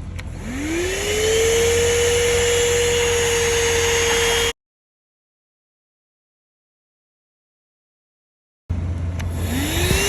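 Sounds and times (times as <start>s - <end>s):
vacuum cleaner motor whine: 0.3s - 4.6s, 9.3s - 10.0s.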